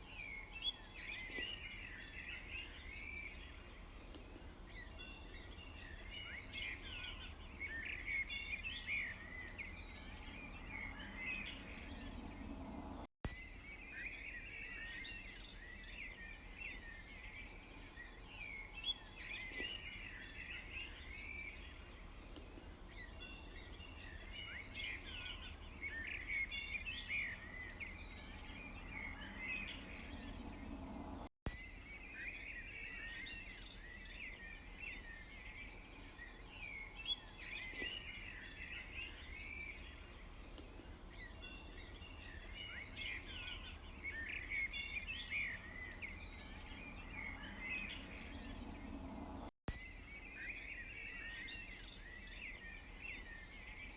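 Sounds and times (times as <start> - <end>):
small birds chirping: 0.0 - 53.9
low background rumble: 27.7 - 31.3, 45.6 - 49.5.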